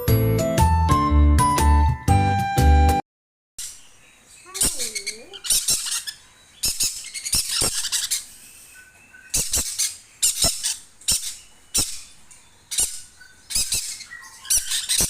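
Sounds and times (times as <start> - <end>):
parrot chick squawking: 4.4 - 15.0.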